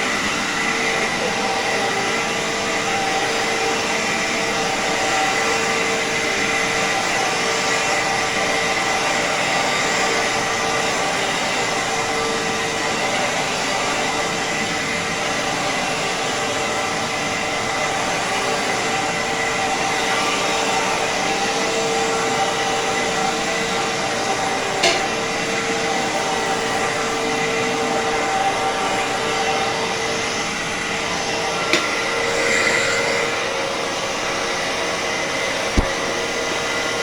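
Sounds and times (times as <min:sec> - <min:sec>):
vacuum cleaner whining: 0:00.0 - 0:37.0
sharp knock: 0:35.8 - 0:36.0.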